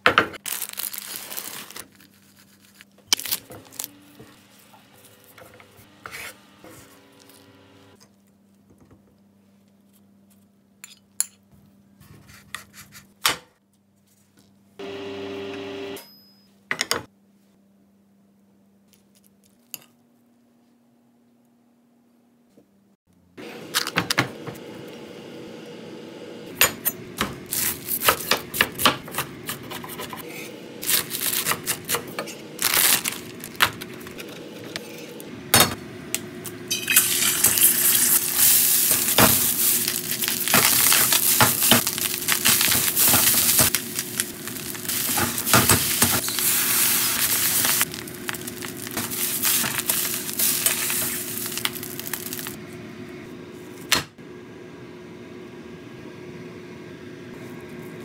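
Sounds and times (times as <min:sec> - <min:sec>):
food sizzling: 0:27.3 - 0:52.6.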